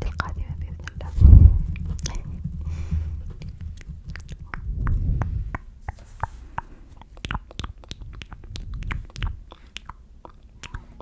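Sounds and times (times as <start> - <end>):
low rumble: 0.0 - 5.8, 8.0 - 9.5.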